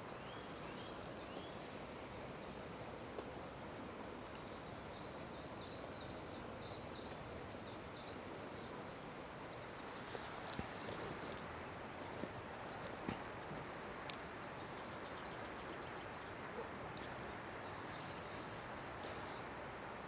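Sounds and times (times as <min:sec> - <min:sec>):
outdoor background hiss: 0:00.0 - 0:20.0
small birds chirping: 0:04.1 - 0:20.0.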